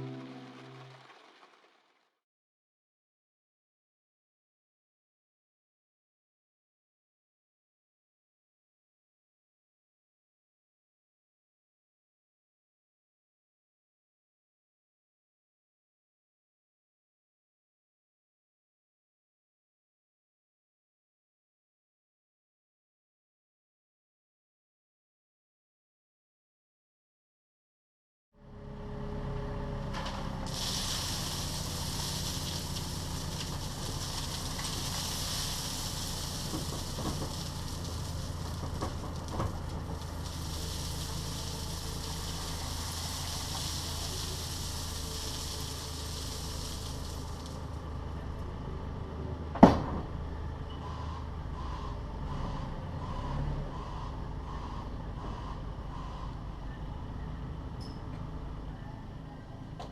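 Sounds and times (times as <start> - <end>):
diesel engine running: 0.0 - 1.9, 28.4 - 59.9.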